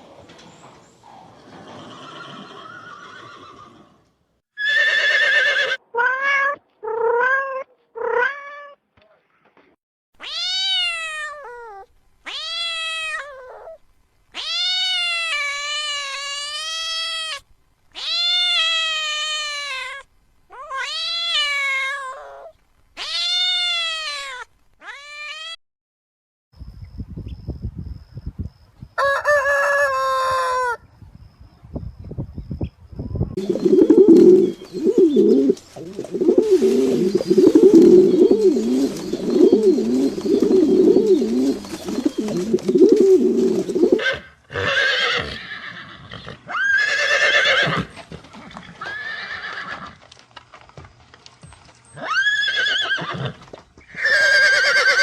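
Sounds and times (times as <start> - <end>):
cat meowing: 5.9 - 8.8, 10.2 - 13.8, 14.4 - 17.4, 18.0 - 25.6
faint rustling: 33.4 - 44.0.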